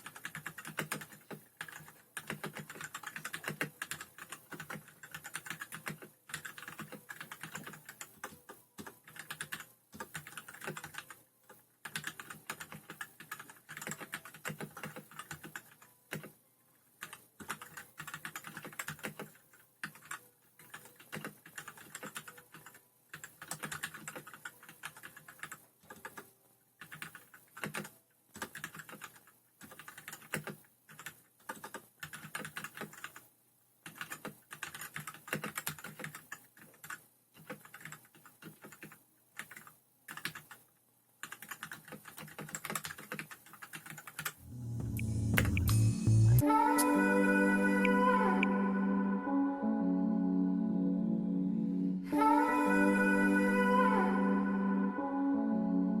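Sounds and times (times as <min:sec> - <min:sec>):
mechanical keyboard typing: 0:00.0 - 0:16.4, 0:17.0 - 0:44.4.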